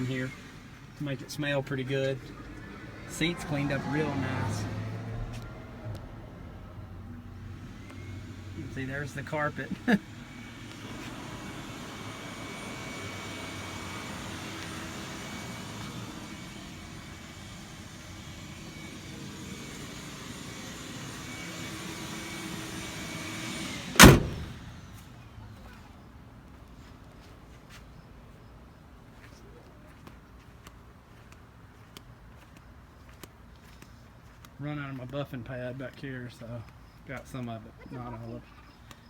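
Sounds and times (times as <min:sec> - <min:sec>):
car door slamming: 0:22.1 - 0:24.7.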